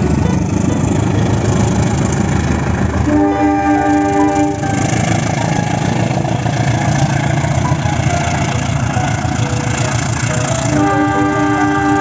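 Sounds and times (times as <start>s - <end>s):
toy diesel engine rumble: 0.0s - 12.0s
toy train horn: 3.0s - 5.9s, 9.0s - 12.0s.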